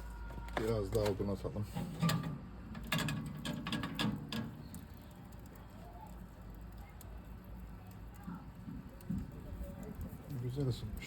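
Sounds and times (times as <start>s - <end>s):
firewood knocking and clattering: 1.8s - 4.8s.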